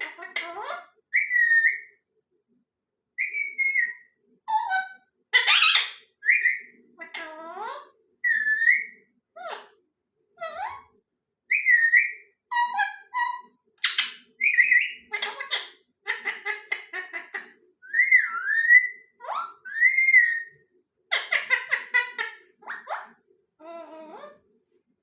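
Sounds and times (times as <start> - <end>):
parrot whistling and chattering: 0.0 - 1.9, 3.2 - 7.4, 8.2 - 9.7, 11.5 - 20.5, 21.1 - 23.2.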